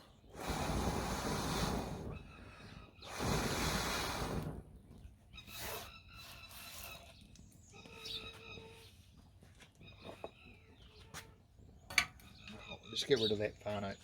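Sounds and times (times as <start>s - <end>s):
person blowing on ember: 0.3s - 4.6s.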